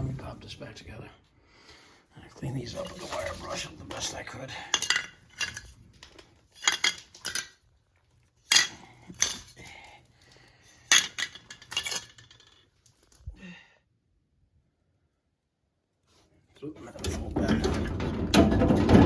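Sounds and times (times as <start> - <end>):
metal parts clinking: 4.7 - 7.6, 8.4 - 9.6, 10.8 - 12.7.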